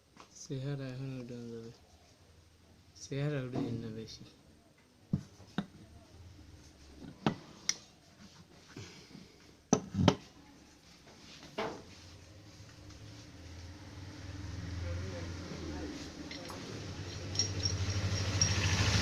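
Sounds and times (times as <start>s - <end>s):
metal parts and tools knocking: 16.2s - 19.0s.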